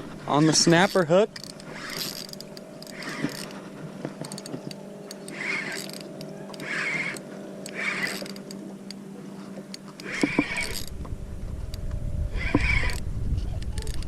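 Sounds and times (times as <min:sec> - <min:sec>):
fishing reel scratchy pulses: 0:00.0 - 0:08.6, 0:10.0 - 0:10.9, 0:12.3 - 0:13.0
steady low hum: 0:00.0 - 0:14.0
low rumble: 0:10.5 - 0:14.0.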